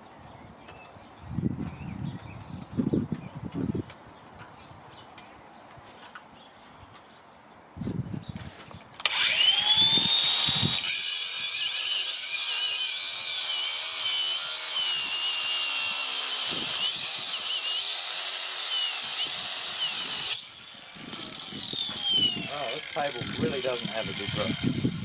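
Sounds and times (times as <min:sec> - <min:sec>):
grinder whining and grinding stone: 0:09.0 - 0:25.0.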